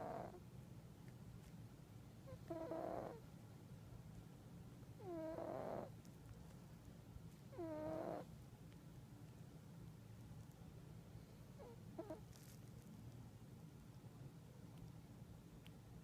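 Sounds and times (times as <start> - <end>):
cat snoring: 0.0 - 0.4, 2.3 - 3.2, 5.0 - 5.9, 7.5 - 8.3, 11.6 - 12.2.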